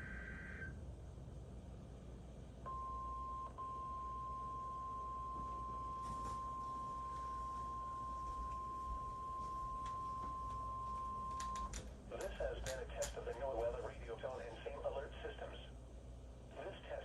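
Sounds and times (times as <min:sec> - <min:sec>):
steady high alarm beep: 0:02.7 - 0:11.6.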